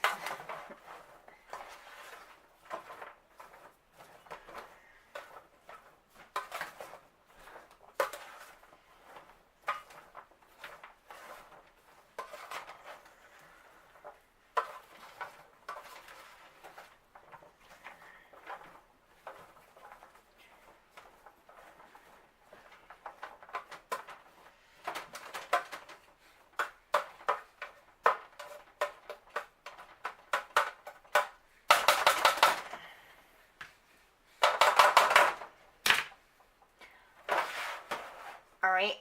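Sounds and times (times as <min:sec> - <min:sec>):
utensil scraping a baking pan: 0:00.0 - 0:27.3, 0:37.2 - 0:38.5.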